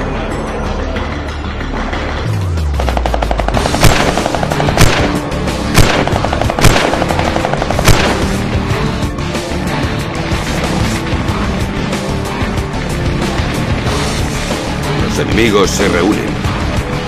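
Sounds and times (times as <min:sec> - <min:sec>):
dramatic soundtrack music: 0:00.0 - 0:17.0
rapid automatic gunfire: 0:02.8 - 0:08.5.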